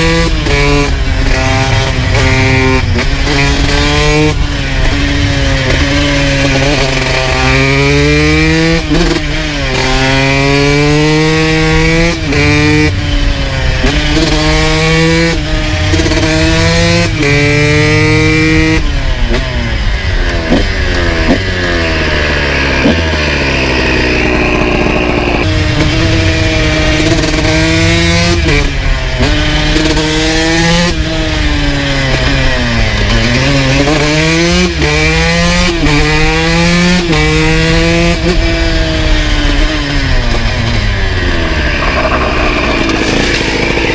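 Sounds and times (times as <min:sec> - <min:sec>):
two-stroke motorcycle engine revving: 0:00.0 - 0:43.9.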